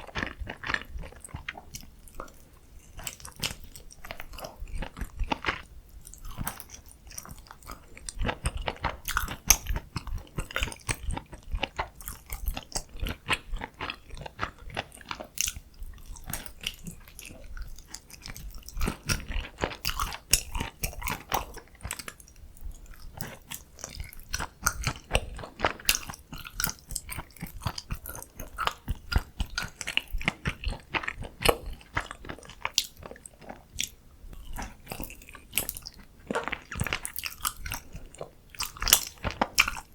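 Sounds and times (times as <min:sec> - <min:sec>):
chewing and crunching food: 0:00.0 - 0:39.9.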